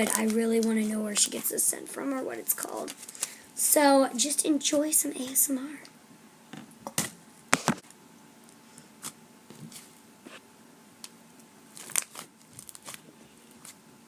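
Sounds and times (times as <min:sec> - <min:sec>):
slime popping and crackling: 0:11.7 - 0:13.0.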